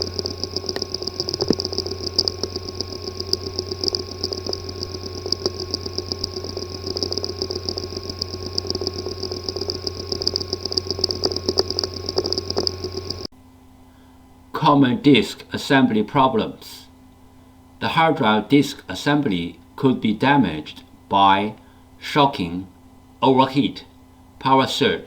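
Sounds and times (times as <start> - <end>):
hard drive ticking and clicking: 0.0 - 13.3
hard drive humming and whining: 0.0 - 25.0.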